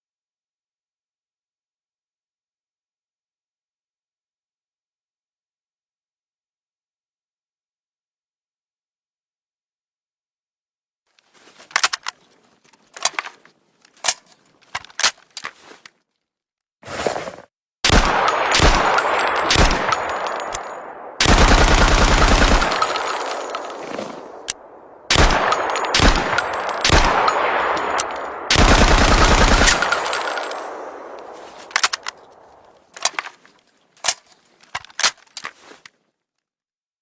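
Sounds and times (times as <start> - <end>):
rifle single shots: 17.8 - 32.7
automatic gunfire burst: 21.2 - 23.4, 25.1 - 27.9, 28.5 - 30.7.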